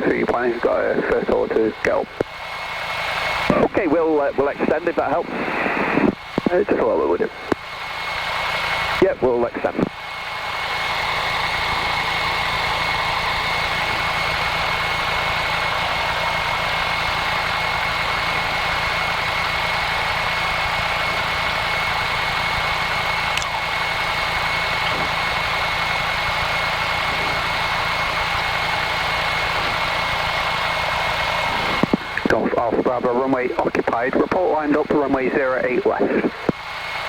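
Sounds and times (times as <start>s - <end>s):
light aircraft engine and propeller: 0.0s - 37.0s.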